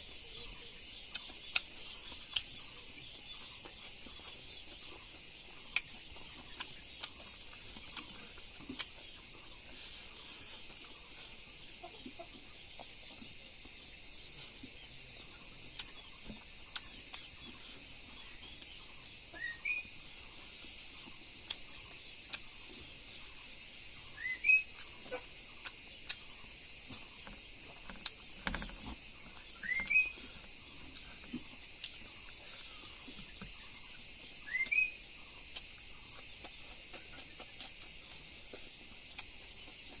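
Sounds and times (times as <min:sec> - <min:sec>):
high-pitched insect chorus: 0:00.0 - 0:40.0.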